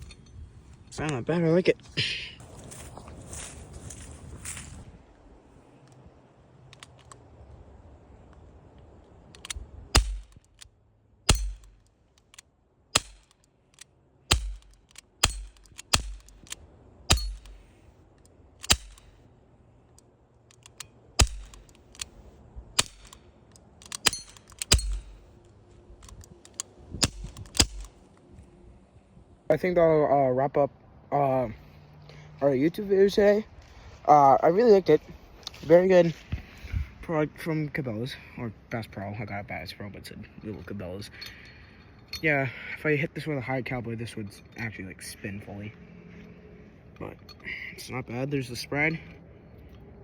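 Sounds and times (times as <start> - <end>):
bb pistol shots: 9.4 - 10.4, 11.3 - 11.8, 12.9 - 13.4, 14.3 - 17.6, 18.6 - 19.1, 21.2 - 22.1, 22.8 - 23.2, 23.8 - 25.2, 27.0 - 27.9.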